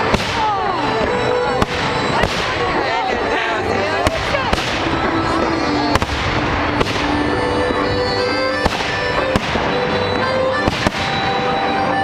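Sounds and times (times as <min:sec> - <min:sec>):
fireworks bangs: 0:00.0 - 0:12.0
music with long held notes: 0:00.0 - 0:12.0.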